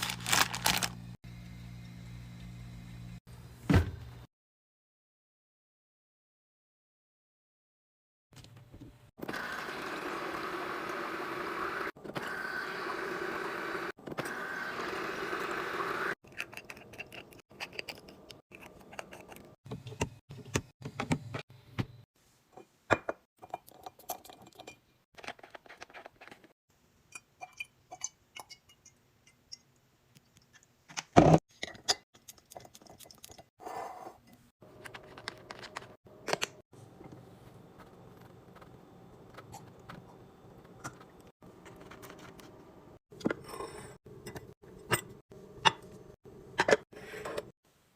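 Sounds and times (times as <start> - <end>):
containers clinking and rustling: 0.0 - 1.0.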